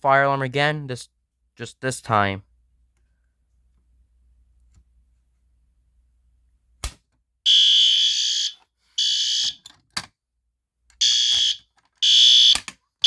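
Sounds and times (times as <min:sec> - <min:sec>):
fire alarm horn blasts: 0:07.4 - 0:09.6, 0:11.0 - 0:12.6.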